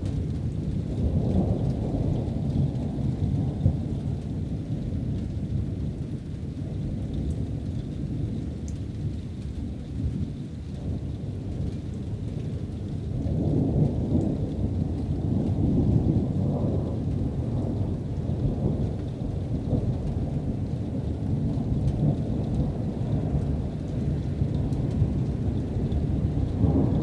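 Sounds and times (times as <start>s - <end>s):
steady rain: 0.0s - 27.0s
thunder rumbling: 13.8s - 27.0s.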